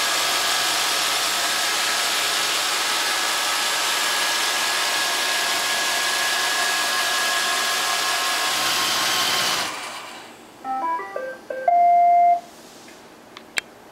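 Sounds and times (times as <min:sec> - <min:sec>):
electronic beeping tune: 0:10.6 - 0:12.4.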